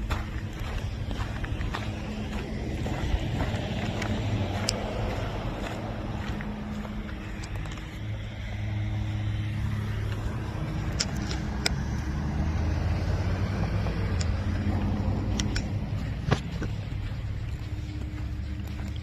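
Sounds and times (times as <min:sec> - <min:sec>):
vehicle engine running: 0:00.0 - 0:19.0
sharp clicks: 0:15.2 - 0:16.7.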